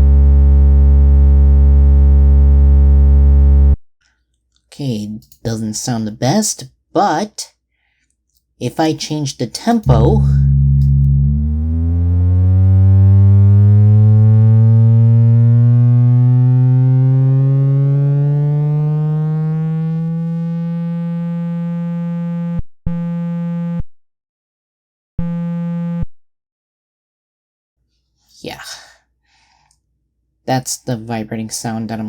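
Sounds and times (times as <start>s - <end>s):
synthesized low buzz: 0.0s - 3.8s, 9.8s - 23.8s.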